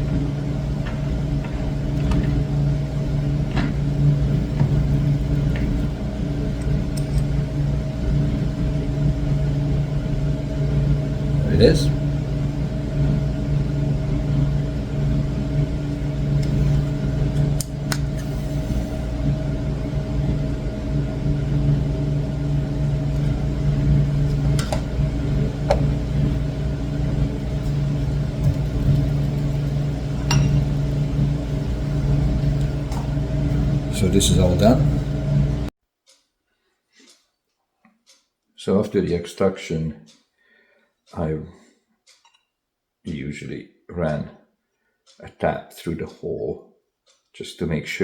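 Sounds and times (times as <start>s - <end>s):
electric motor humming: 0.0s - 35.7s.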